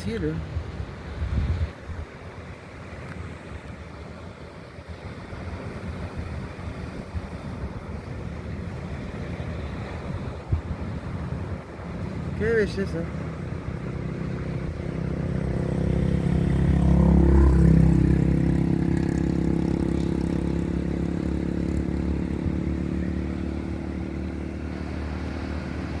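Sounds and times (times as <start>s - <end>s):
engine passing: 8.2s - 26.0s.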